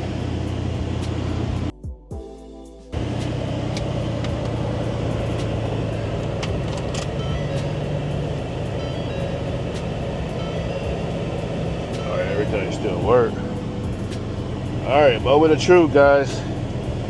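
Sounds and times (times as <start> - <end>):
pickup engine idling: 0.0 - 1.7, 3.0 - 17.0.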